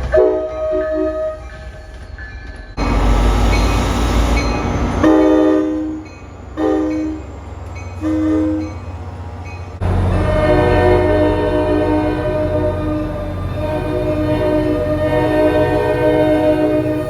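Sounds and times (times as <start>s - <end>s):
train air horn: 0.1s - 1.5s, 5.0s - 6.0s, 6.6s - 7.3s, 8.0s - 8.8s, 9.8s - 17.0s
loud rumble: 9.8s - 15.3s.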